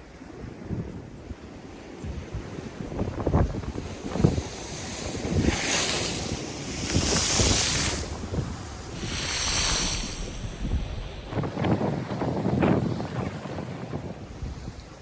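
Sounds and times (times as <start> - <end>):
sea waves washing ashore: 0.0 - 15.0
wind buffeting microphone: 0.0 - 15.0.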